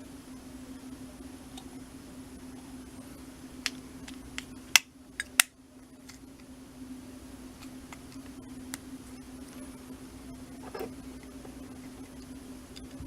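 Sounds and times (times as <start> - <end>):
steady low hum: 0.0 - 13.0
sharp plastic snaps: 3.6 - 6.2.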